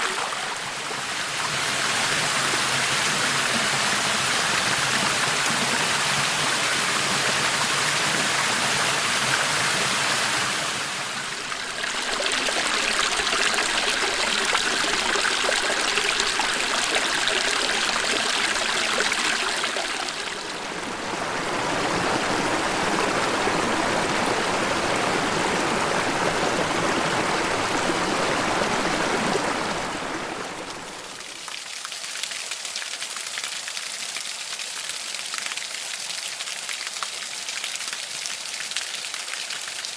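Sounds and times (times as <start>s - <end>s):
water rushing over waterfall: 0.0s - 31.2s.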